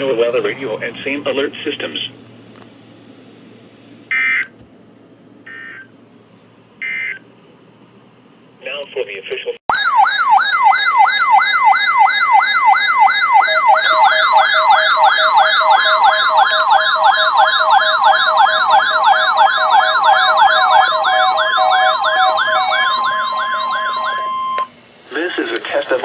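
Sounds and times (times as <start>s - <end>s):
electronic siren wails: 4.1s - 4.5s, 5.5s - 5.9s, 6.8s - 7.2s, 9.7s - 24.8s
steady electronic tones: 11.2s - 26.0s.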